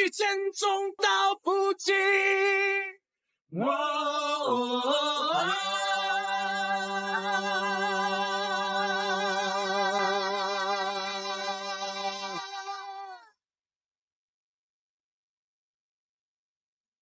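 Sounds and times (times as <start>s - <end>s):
person singing wordlessly: 0.0s - 13.3s.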